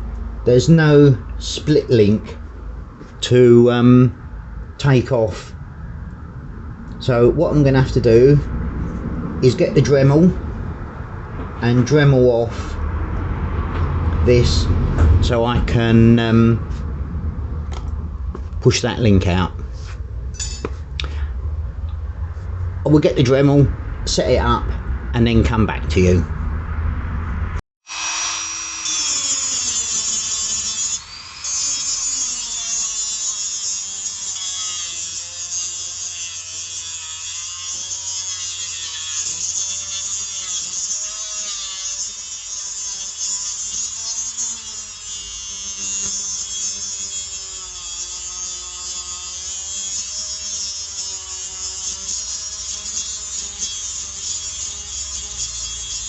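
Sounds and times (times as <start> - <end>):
rotary tool grinding metal: 27.9 - 56.0.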